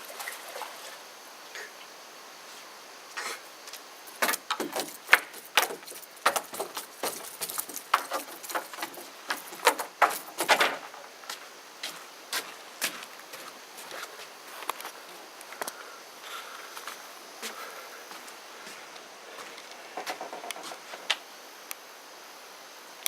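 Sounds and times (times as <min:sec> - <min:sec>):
sharp knocks and clatters: 0:04.2 - 0:11.1, 0:19.9 - 0:21.2.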